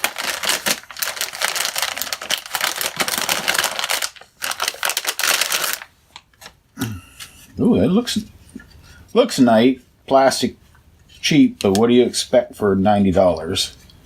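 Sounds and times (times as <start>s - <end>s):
packaging crinkling and rustling: 0.0s - 6.6s.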